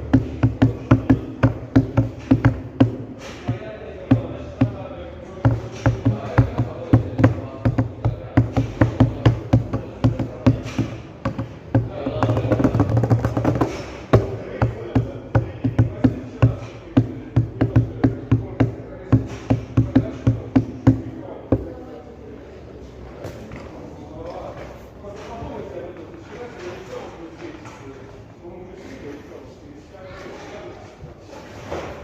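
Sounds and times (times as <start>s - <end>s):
sharp knocking: 0.0s - 21.9s.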